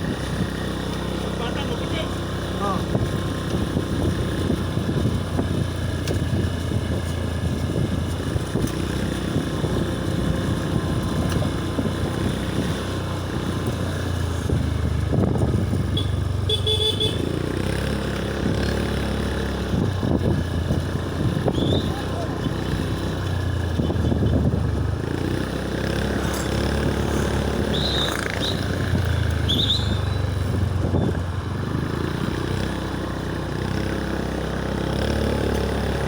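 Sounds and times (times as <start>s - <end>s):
motorcycle engines running: 0.0s - 36.0s
short horn beep: 15.9s - 17.4s.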